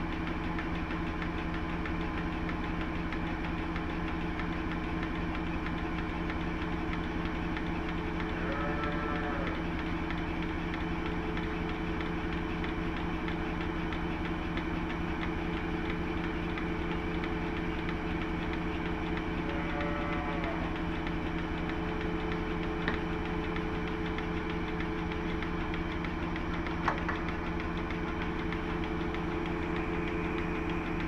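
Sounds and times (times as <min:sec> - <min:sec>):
machine hum: 0:00.0 - 0:31.0
cow mooing: 0:08.3 - 0:09.6, 0:19.4 - 0:20.7.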